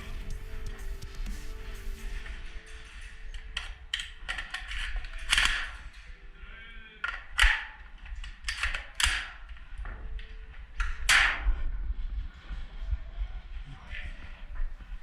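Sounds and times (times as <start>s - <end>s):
low rumble: 0.0s - 3.3s.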